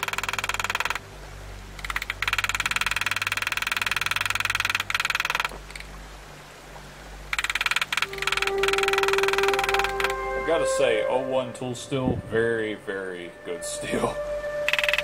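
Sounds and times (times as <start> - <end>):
graver ticking on steel plate: 0.0 - 1.0, 1.8 - 5.5, 7.4 - 10.0, 14.7 - 15.0.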